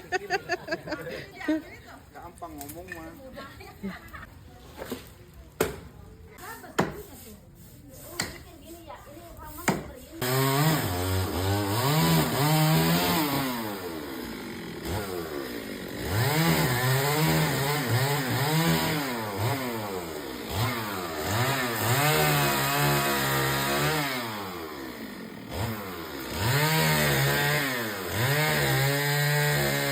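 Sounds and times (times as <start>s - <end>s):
chainsaw cutting wood: 9.5s - 29.9s.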